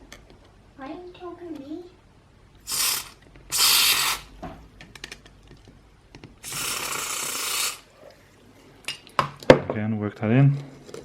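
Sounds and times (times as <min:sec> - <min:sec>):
aerosol can spraying: 0:02.7 - 0:04.3, 0:06.4 - 0:07.8.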